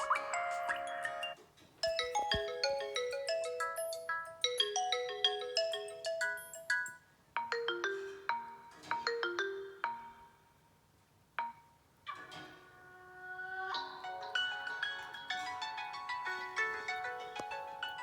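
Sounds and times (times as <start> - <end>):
bell-like ringtone melody: 0.0 - 10.4, 14.0 - 18.0
soft ringtone: 0.0 - 10.4.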